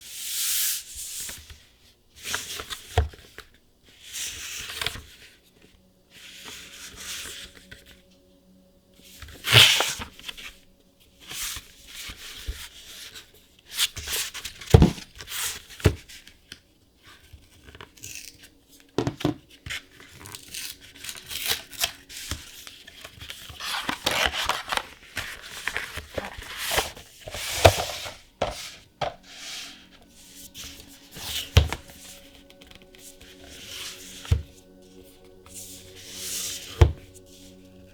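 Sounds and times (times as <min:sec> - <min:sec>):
packaging tearing and crinkling: 0:23.6 - 0:27.0.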